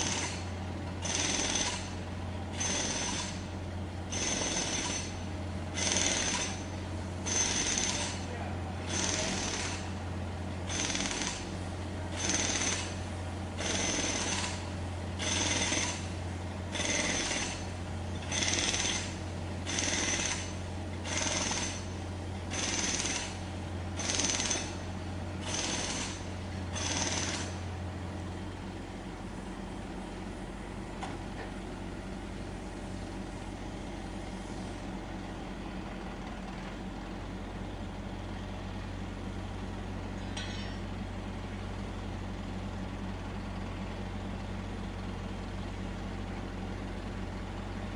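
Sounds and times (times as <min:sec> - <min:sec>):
jackhammer hammering: 0:01.0 - 0:01.9, 0:02.6 - 0:03.4, 0:04.1 - 0:05.1, 0:05.8 - 0:06.6, 0:07.2 - 0:08.2, 0:08.9 - 0:09.9, 0:10.7 - 0:11.5, 0:12.1 - 0:13.0, 0:13.6 - 0:14.6, 0:15.2 - 0:16.1, 0:16.7 - 0:17.6, 0:18.3 - 0:21.9, 0:22.5 - 0:23.4, 0:24.0 - 0:24.8, 0:25.4 - 0:27.6.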